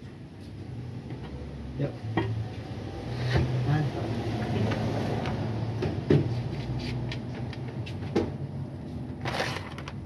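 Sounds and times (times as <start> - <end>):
tools and parts clattering: 9.2 - 10.0.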